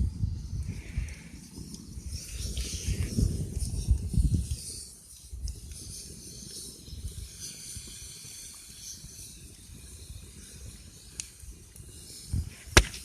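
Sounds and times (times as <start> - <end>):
campfire crackling: 0.0 - 13.0
sharp pop: 12.8 - 13.0.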